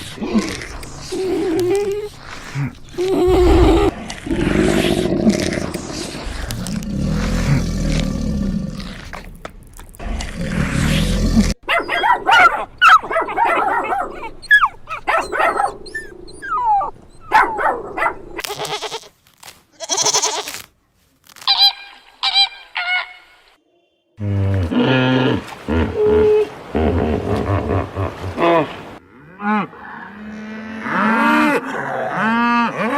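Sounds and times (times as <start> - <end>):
low rumbling animal call: 3.0 - 4.6.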